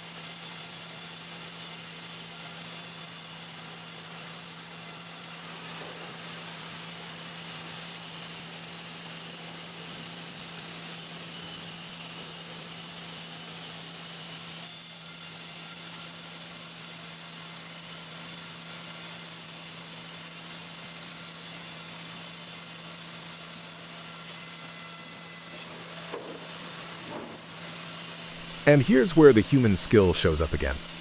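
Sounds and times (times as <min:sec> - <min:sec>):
sawmill machinery humming: 0:27.7 - 0:31.0.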